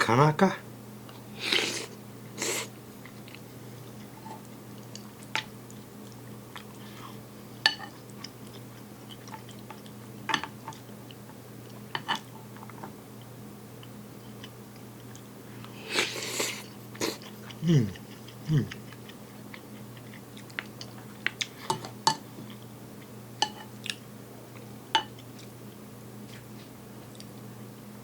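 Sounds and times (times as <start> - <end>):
steady low hum: 0.0 - 28.0
person chewing: 5.7 - 6.8, 14.3 - 21.6.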